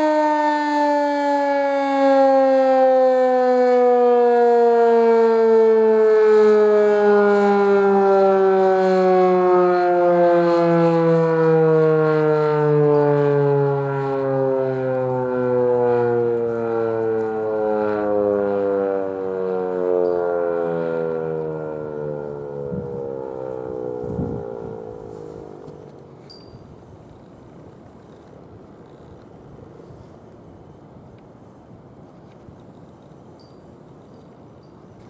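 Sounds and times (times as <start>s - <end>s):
warning siren winding down: 0.0s - 26.4s.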